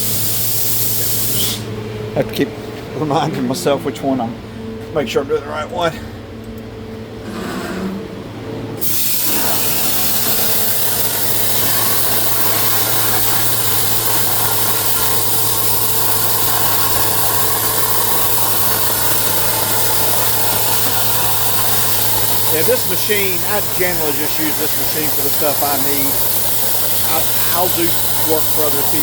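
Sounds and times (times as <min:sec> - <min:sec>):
plasma torch hissing: 0:00.0 - 0:01.7, 0:08.8 - 0:29.0
constant low hum: 0:00.8 - 0:08.8.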